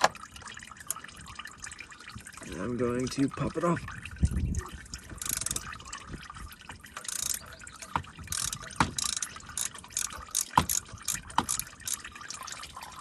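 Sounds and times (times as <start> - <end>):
oil trickling: 0.0 - 13.0
ratcheting wrench clicking: 5.2 - 5.6, 7.0 - 12.0.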